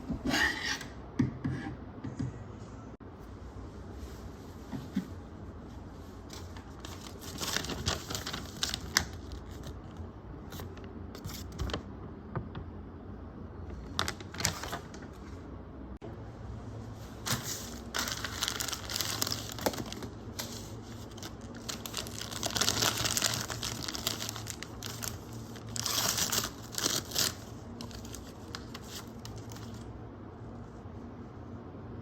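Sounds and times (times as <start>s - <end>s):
packaging crinkling and tearing: 6.3s - 11.8s, 13.7s - 15.2s, 17.3s - 29.9s.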